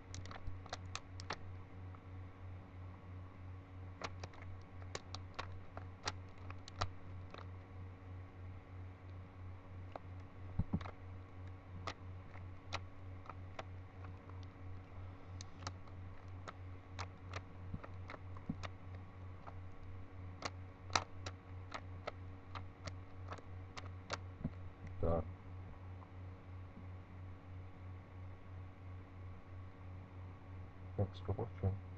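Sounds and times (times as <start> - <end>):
steady low hum: 0.0 - 31.9
plastic cube clicks: 0.1 - 1.4, 4.0 - 7.5, 9.9 - 11.0, 11.8 - 24.6.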